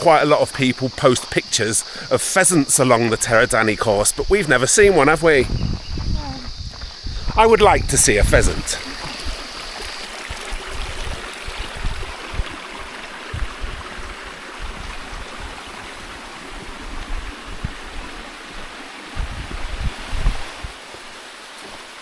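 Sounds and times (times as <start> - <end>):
stream babbling: 0.0 - 5.5, 7.4 - 22.0
low thumps: 4.2 - 18.2, 19.2 - 20.8.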